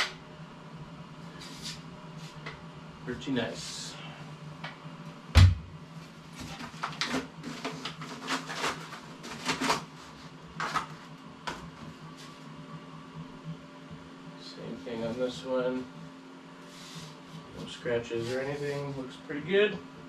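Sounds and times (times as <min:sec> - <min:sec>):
heavy thump: 0:05.4 - 0:05.8.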